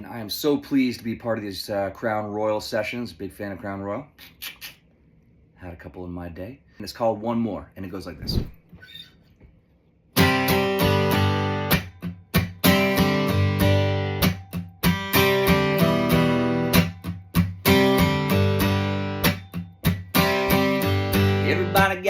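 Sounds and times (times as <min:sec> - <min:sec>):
acoustic guitar strumming: 0:10.2 - 0:22.0.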